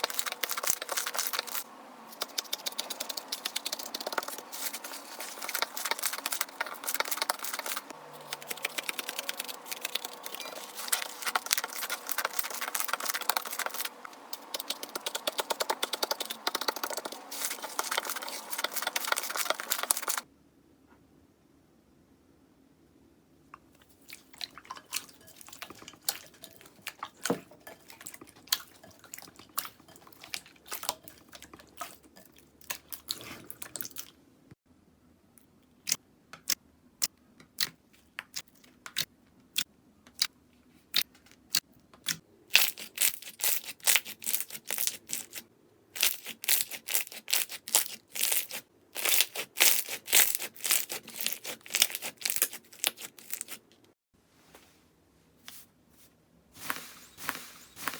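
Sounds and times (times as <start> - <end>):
slime crackling and popping: 46.0 - 53.6.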